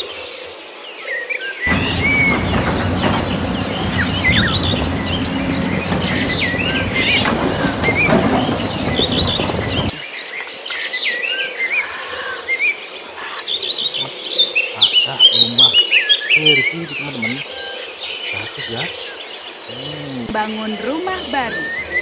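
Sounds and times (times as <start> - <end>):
loud rough rumbling: 1.7 - 10.0.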